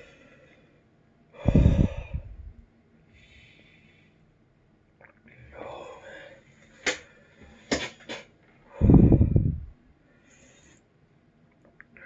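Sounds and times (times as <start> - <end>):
man exhaling heavily: 1.4 - 2.4.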